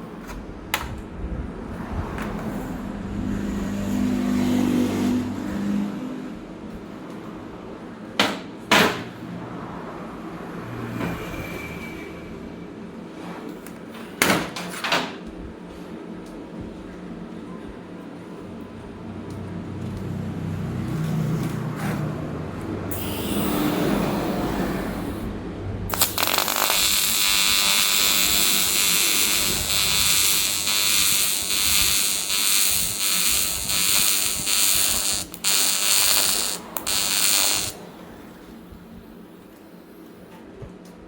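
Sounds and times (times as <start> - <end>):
welding arc buzzing: 22.9 - 25.3, 25.9 - 37.9.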